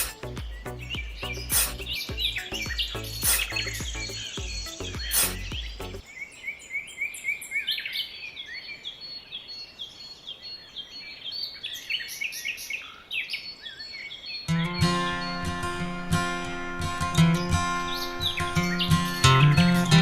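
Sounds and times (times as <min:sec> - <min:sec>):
music with a beat: 0:00.0 - 0:06.0, 0:18.4 - 0:20.0
songbirds chirping: 0:00.0 - 0:20.0.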